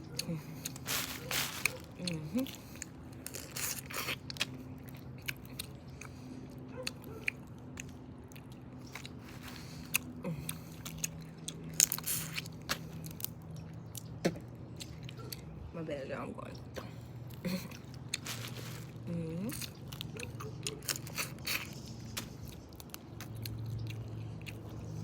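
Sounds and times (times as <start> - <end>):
chewing: 0.0 - 15.7, 16.6 - 25.0
steady low hum: 0.0 - 25.0
shells crackling: 0.6 - 3.6, 18.2 - 19.0.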